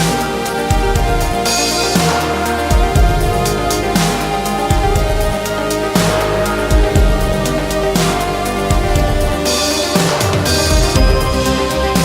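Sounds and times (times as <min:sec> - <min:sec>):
deep bass: 0:00.0 - 0:12.0
electronic dance music: 0:00.0 - 0:12.0
synth chords: 0:00.0 - 0:12.0
kick drum: 0:02.7 - 0:03.6, 0:06.6 - 0:07.6, 0:10.7 - 0:11.4.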